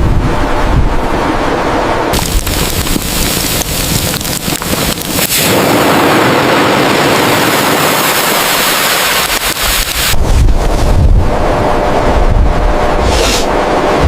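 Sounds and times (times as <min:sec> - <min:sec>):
loud rushing wind: 0:00.0 - 0:14.0
sharp crackles: 0:02.1 - 0:10.2.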